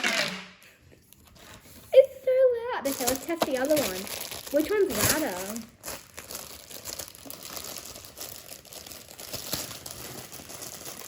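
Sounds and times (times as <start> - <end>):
plastic pop tube crinkling: 0.0 - 0.6, 2.8 - 11.0.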